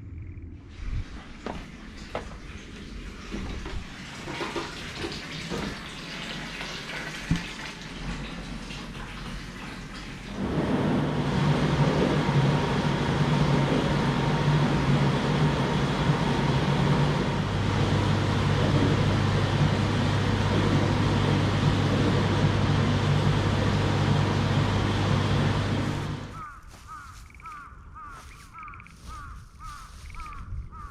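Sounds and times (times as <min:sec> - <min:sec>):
motor humming: 0:10.3 - 0:30.9.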